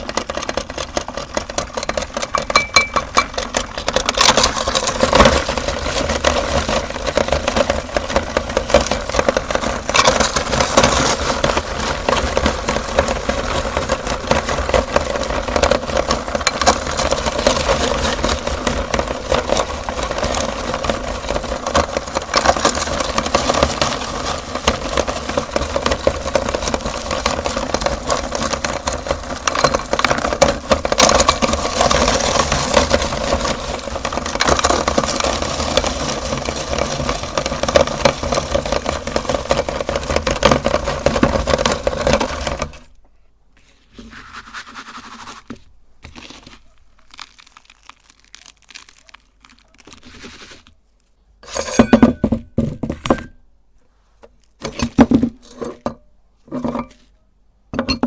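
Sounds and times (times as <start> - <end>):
meat grinder crunching candy: 0.0 - 42.9, 45.1 - 50.8
faint handling sounds: 41.8 - 52.3, 52.9 - 57.4.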